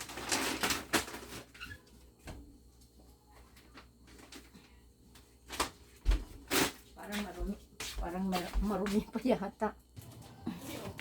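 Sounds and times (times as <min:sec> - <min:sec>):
packaging rustling: 0:00.0 - 0:01.8.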